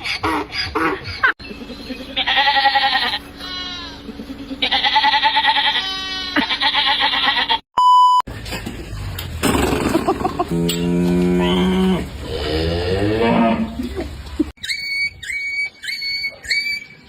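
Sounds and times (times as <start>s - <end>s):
goat-like bleating: 1.9s - 7.6s
electronic beep: 7.8s - 8.2s.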